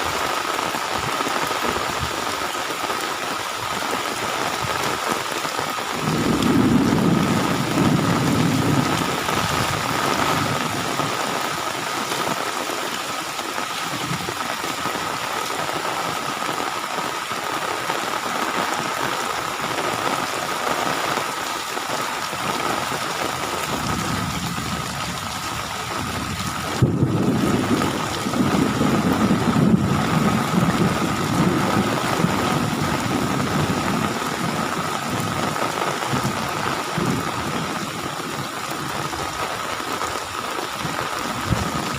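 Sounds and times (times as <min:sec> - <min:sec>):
heavy rain pouring: 0:00.0 - 0:41.9
thunder rumbling: 0:05.8 - 0:11.8, 0:22.5 - 0:39.4, 0:40.9 - 0:41.9.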